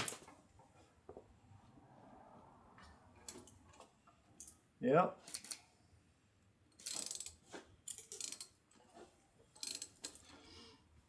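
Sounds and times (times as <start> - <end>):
ratchet clicking: 6.7 - 8.6, 9.6 - 10.2.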